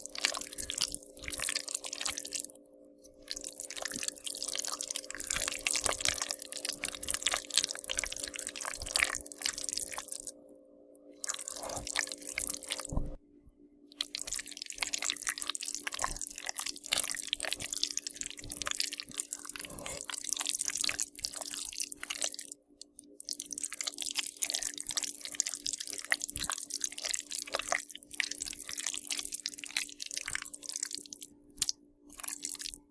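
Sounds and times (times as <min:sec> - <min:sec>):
wet squelching and smacking: 0:00.0 - 0:02.5, 0:03.2 - 0:10.3, 0:11.2 - 0:13.2, 0:13.9 - 0:32.9
low hum: 0:10.1 - 0:13.8.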